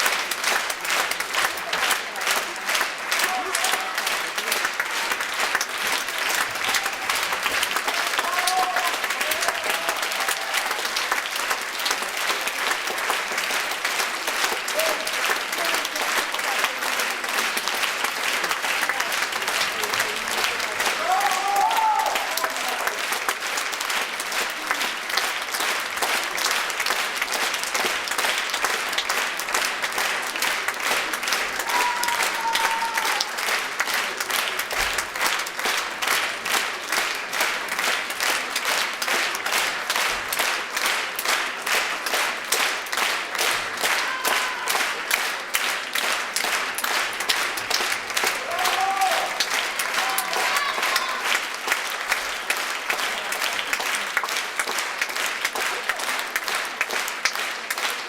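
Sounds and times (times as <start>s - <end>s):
audience clapping: 0.0s - 58.0s
crowd shouts: 7.9s - 10.8s, 21.0s - 22.9s, 31.6s - 33.3s, 43.9s - 44.8s, 48.4s - 51.3s.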